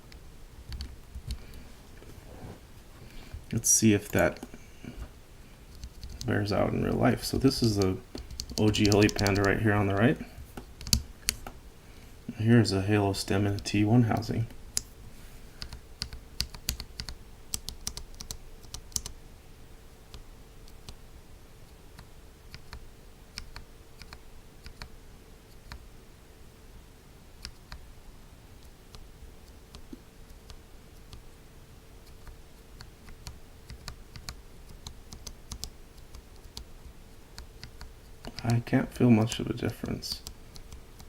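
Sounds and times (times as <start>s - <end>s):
faint steady hum: 0.0s - 41.0s.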